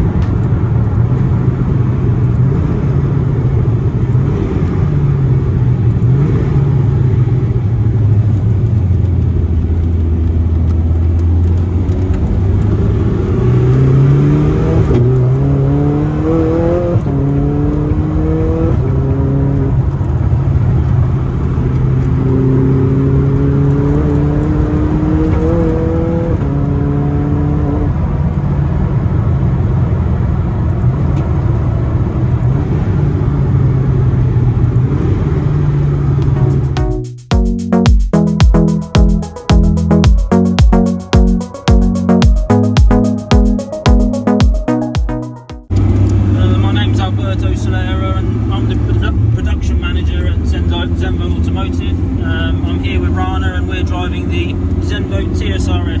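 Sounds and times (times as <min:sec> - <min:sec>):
car engine accelerating through gears: 0:00.1 - 0:29.9.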